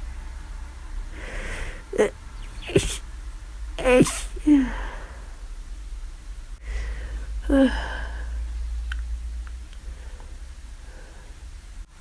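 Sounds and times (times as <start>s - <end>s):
person sneezing: 1.5s - 3.0s, 3.8s - 4.8s.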